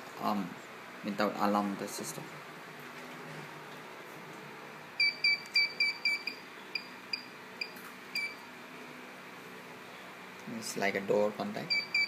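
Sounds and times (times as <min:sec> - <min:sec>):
security alarm beeping: 0:05.0 - 0:08.4, 0:11.7 - 0:12.0.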